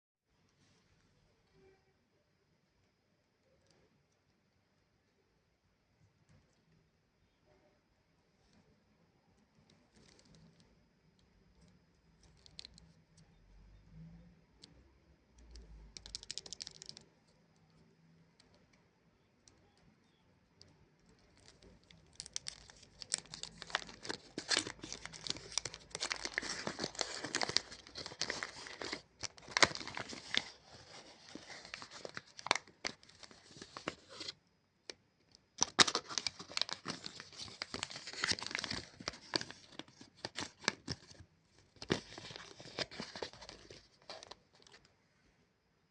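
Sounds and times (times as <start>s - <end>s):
plastic wrapper crinkling: 12.2s - 13.0s, 15.5s - 17.1s, 21.1s - 34.4s, 35.6s - 44.8s.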